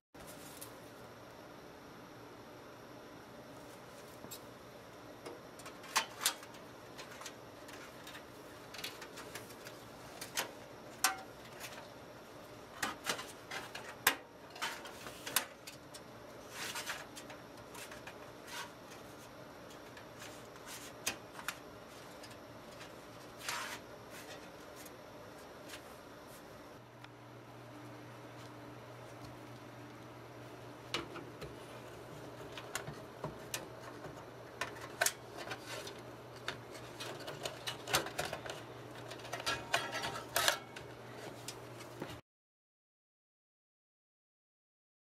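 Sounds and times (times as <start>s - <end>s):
faint steady hum: 0.2s - 42.2s.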